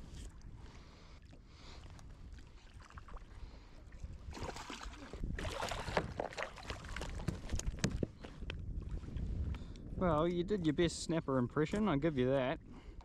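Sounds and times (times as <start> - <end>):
wind on microphone: 0.0 - 13.0
water splashing: 2.3 - 7.6.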